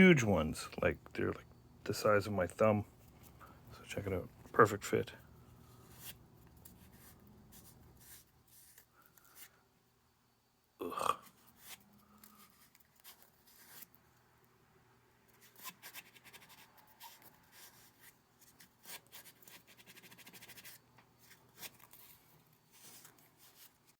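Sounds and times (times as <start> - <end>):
cotton swab scratching and rubbing: 5.7 - 9.5, 11.5 - 13.9, 15.3 - 23.9
person grunting: 10.8 - 11.2.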